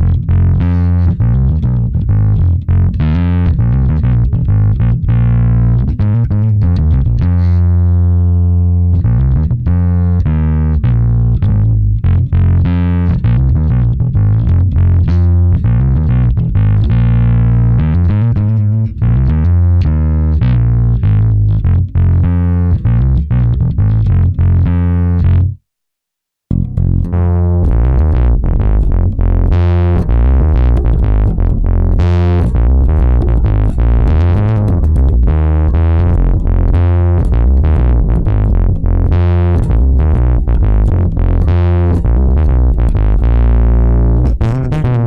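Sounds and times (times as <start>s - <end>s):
distorted electric bass riff: 0.0s - 25.6s, 26.5s - 45.0s.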